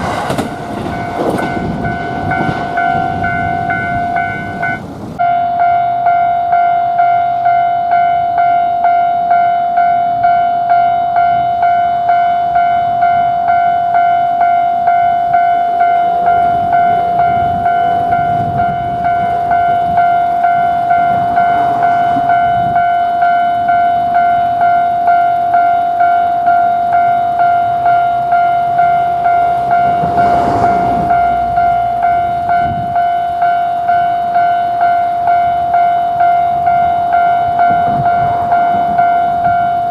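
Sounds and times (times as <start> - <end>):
level crossing warning bell: 0.0 - 39.9
rushing of something passing: 29.8 - 31.5.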